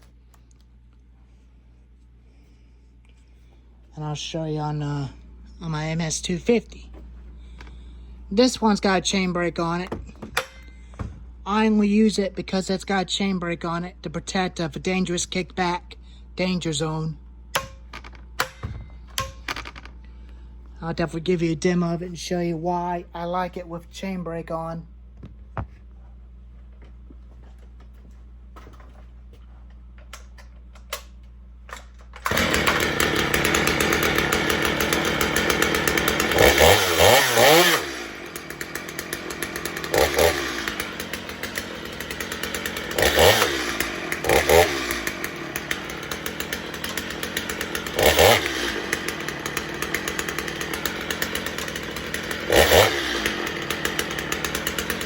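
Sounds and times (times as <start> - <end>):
chainsaw revving and idling: 7.8 - 9.9, 32.2 - 55.0.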